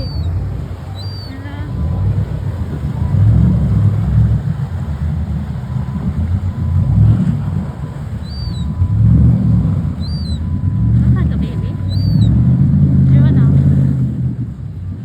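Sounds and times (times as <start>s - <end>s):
bird chirp: 0.0s - 1.8s, 7.8s - 11.0s, 11.6s - 12.5s
wind buffeting microphone: 0.0s - 15.0s.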